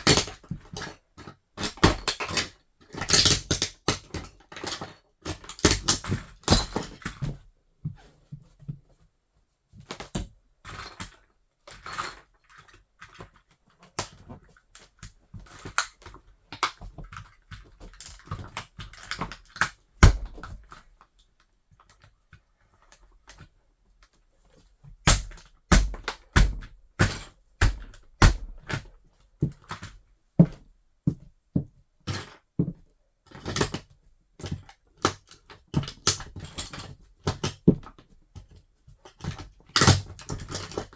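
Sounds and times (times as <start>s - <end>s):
toy car cracking underfoot: 0.0s - 0.8s, 1.6s - 7.1s, 25.1s - 28.9s, 39.3s - 40.9s.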